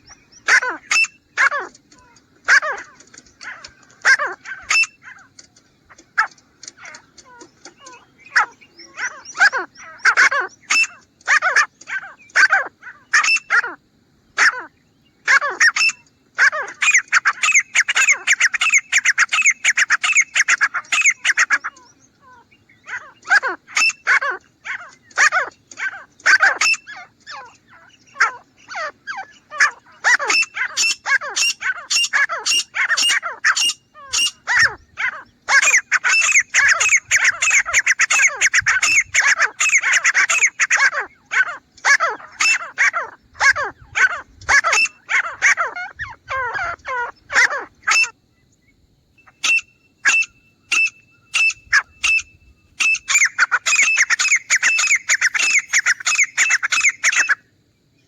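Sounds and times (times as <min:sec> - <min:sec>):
bird calling sharp notes: 0:00.0 - 0:13.8, 0:14.4 - 0:48.2, 0:49.2 - 0:57.5.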